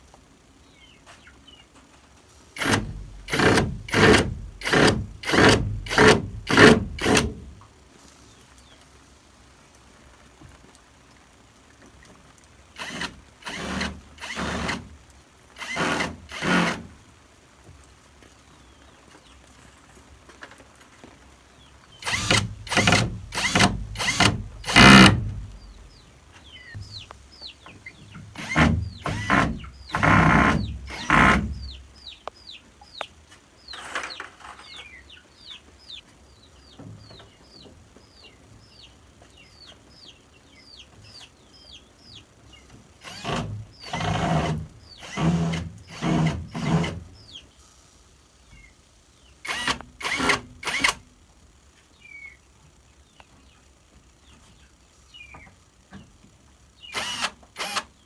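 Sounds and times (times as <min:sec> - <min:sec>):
hand tool rasping strokes: 0:02.6 - 0:07.4, 0:12.8 - 0:14.8, 0:15.6 - 0:16.9, 0:22.0 - 0:25.8, 0:28.4 - 0:31.6, 0:43.0 - 0:47.0.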